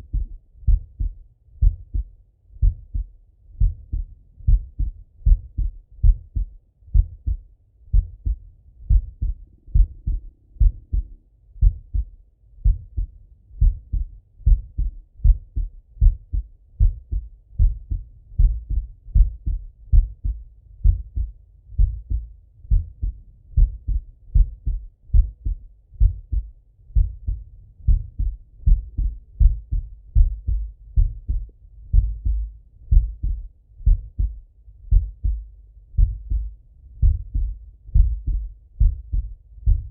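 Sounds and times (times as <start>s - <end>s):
heartbeat through stethoscope: 0.0s - 39.9s.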